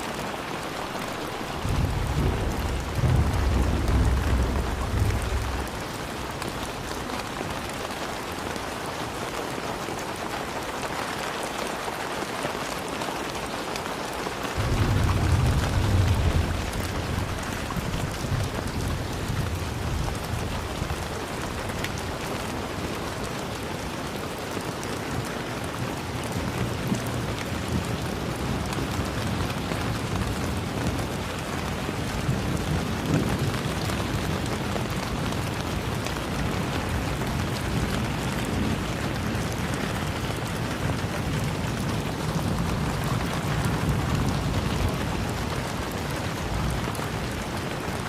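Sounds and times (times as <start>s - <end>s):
steady rain falling: 0.0s - 48.0s
distant thunder rumbling: 0.8s - 8.6s, 14.6s - 22.6s.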